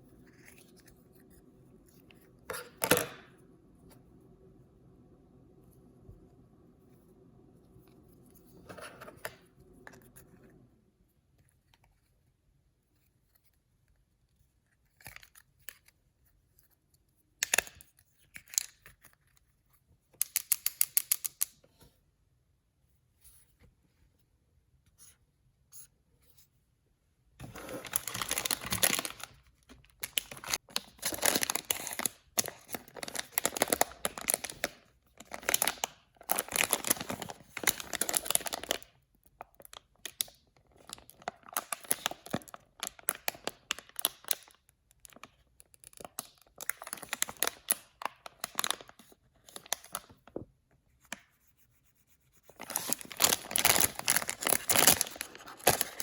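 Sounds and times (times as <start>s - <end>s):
packaging torn and crumpled: 27.5s - 38.9s, 39.9s - 50.0s, 52.6s - 56.0s.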